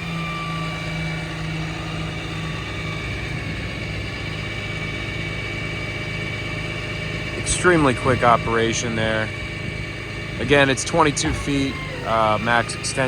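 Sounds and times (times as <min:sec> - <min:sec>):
diesel engine running: 0:00.0 - 0:13.0
hydraulic whine: 0:00.0 - 0:13.0.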